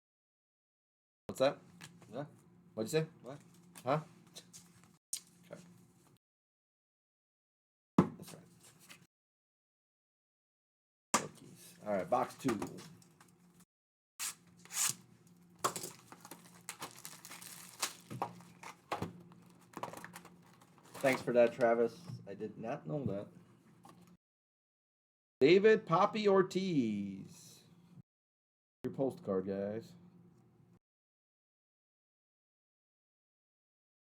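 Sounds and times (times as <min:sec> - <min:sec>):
plastic wrapping crinkling and tearing: 0:15.6 - 0:21.4.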